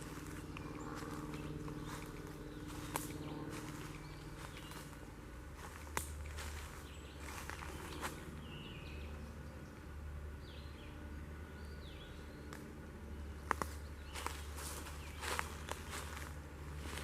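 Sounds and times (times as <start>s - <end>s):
footsteps crunching through leaves: 0.0s - 8.9s, 13.5s - 17.0s
low hum: 0.0s - 17.0s
songbird chirps: 0.0s - 17.0s.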